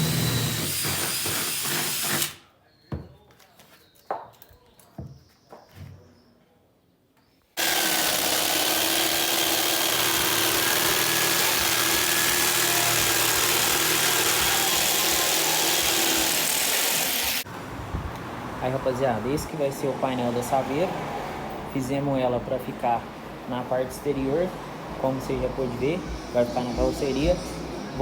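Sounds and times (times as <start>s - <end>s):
power tool running: 0.0s - 2.4s, 7.6s - 17.5s.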